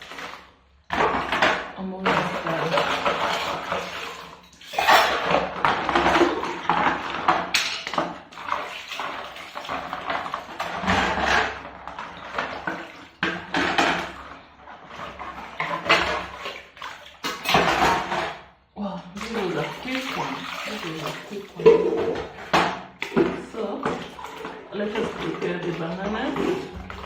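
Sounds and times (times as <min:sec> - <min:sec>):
water splashing: 0:00.0 - 0:18.3, 0:19.2 - 0:27.0
dishware clattering: 0:01.2 - 0:08.1, 0:17.2 - 0:18.4.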